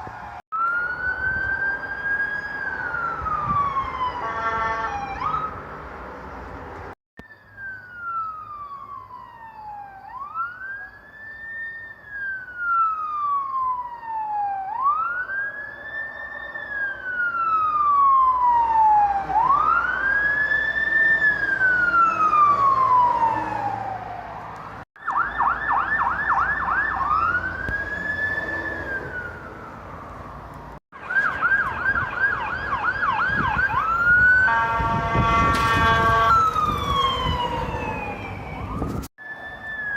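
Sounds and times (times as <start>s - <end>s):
electronic siren wailing and yelping: 0.6s - 5.6s, 7.2s - 24.3s, 25.0s - 29.7s, 31.0s - 34.9s, 35.6s - 39.9s
loud horn blast: 4.2s - 5.0s, 34.4s - 36.6s.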